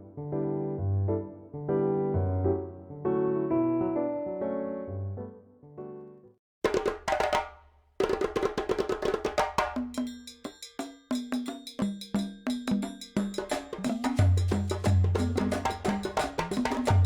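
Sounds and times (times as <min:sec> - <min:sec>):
sharp percussive hits with notes: 0:09.0 - 0:17.0.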